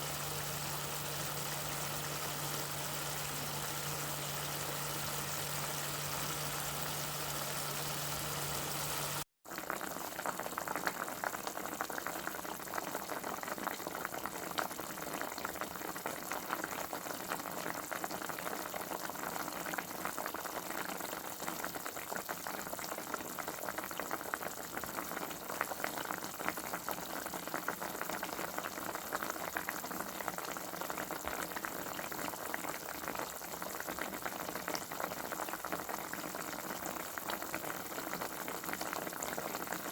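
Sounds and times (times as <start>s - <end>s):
mechanical hum: 0.0s - 9.2s
liquid boiling in a pot: 0.0s - 39.9s.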